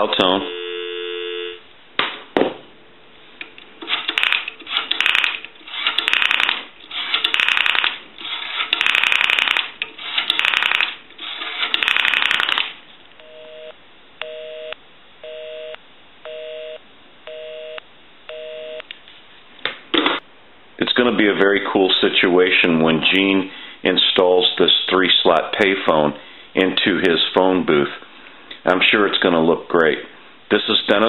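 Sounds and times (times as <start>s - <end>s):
two-tone busy signal beep: 0.4s - 1.6s, 13.2s - 18.8s.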